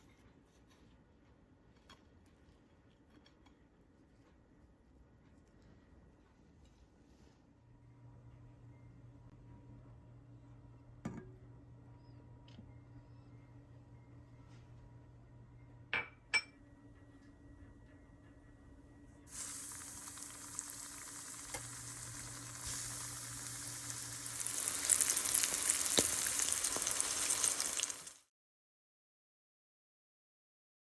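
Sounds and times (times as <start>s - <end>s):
croquettes sizzling in frying oil: 19.3s - 28.3s.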